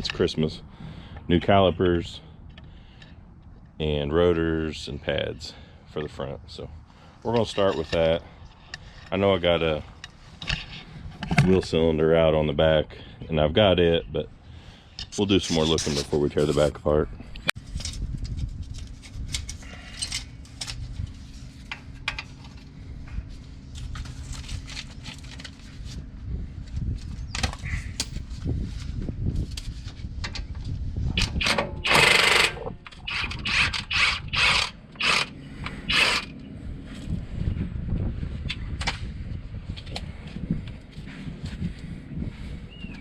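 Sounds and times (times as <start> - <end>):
steady low rumble: 0.0 - 43.0
tools and metal parts clanking: 7.3 - 9.2, 19.0 - 20.9.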